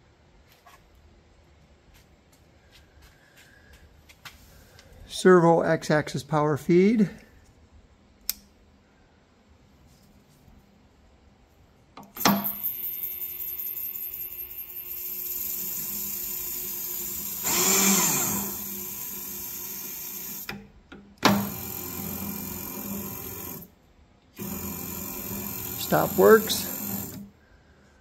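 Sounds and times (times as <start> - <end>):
power feed motor whirring: 15.0 - 20.6, 21.3 - 23.7, 24.4 - 27.3.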